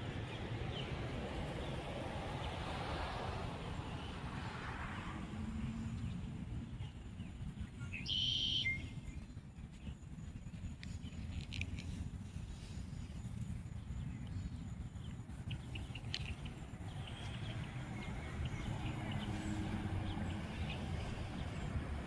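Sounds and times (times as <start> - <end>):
steady low rumble: 0.0 - 22.0
birds chirping: 5.8 - 21.9.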